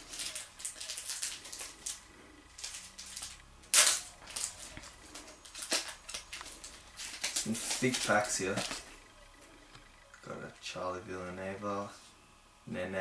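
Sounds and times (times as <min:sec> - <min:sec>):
packaging ripping: 0:00.0 - 0:08.9
wrapper crinkling and rustling: 0:00.0 - 0:09.0.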